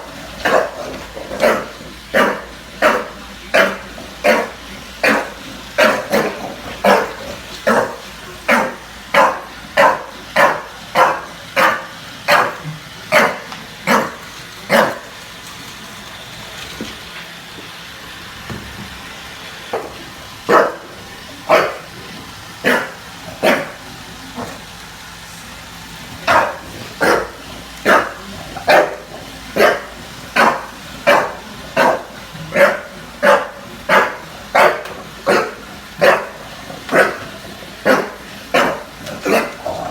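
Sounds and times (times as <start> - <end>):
bulldog barking: 0.0 - 15.2, 19.7 - 20.9, 21.5 - 21.9, 22.6 - 23.8, 26.2 - 39.9.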